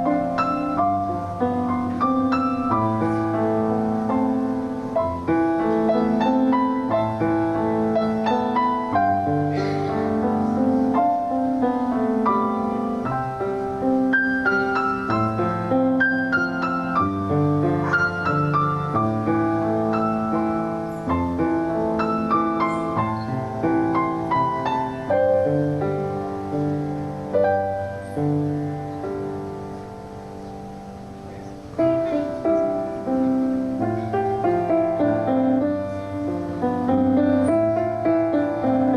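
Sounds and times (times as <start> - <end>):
slow gentle solo piano: 0.0 - 38.9.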